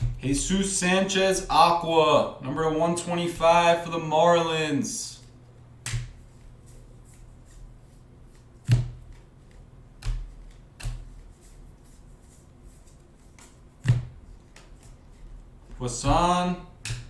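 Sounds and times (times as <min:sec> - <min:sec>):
cards tapping: 0:05.8 - 0:17.0.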